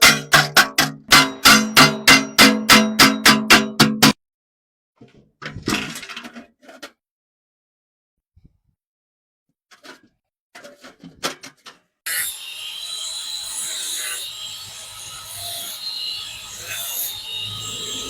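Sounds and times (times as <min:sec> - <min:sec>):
hand tool scraping metal: 0:13.0 - 0:18.0.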